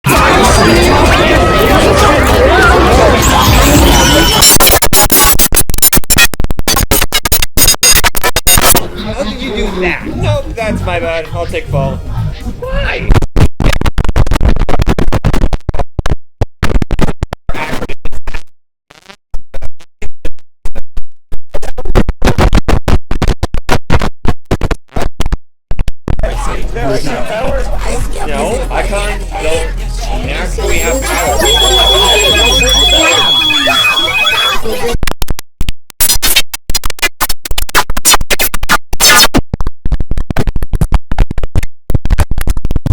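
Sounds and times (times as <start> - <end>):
stuttering chopped music: 0.1 - 8.8, 13.1 - 18.3, 30.1 - 34.6, 36.0 - 42.9
stuttering chopped computer chime: 3.1 - 8.8, 30.8 - 34.6.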